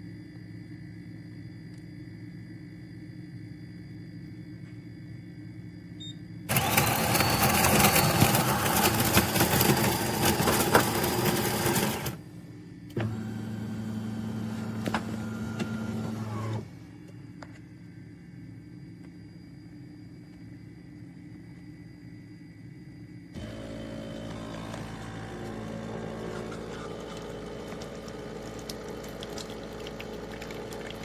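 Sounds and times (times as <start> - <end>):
low motor hum: 0.0 - 17.9, 23.2 - 31.0
grinder grinding coffee beans: 6.5 - 12.2, 23.4 - 31.0.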